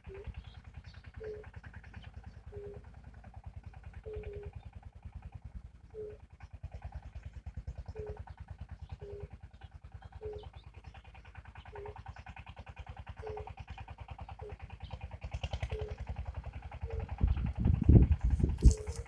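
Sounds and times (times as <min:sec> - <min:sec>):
frogs croaking: 0:01.2 - 0:02.9, 0:08.9 - 0:17.6.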